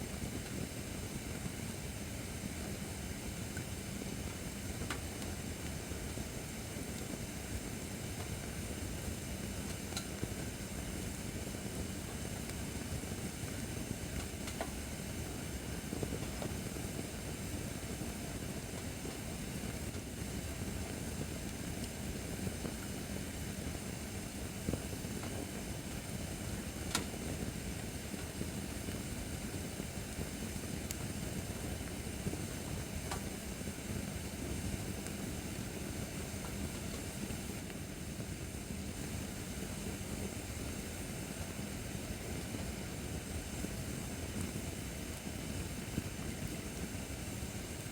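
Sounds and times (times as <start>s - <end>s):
hiss of flames: 0.0s - 47.9s
firewood crackling and popping: 13.5s - 14.8s.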